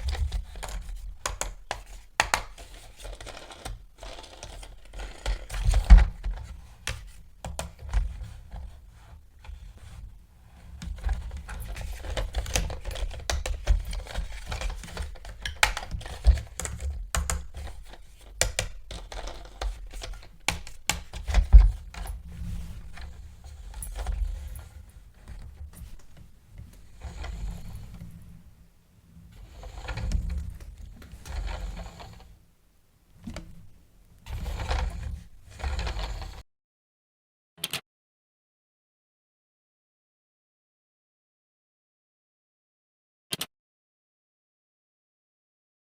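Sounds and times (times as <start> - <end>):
plastic toys clicking and tapping: 0.1 - 7.9, 11.0 - 22.1.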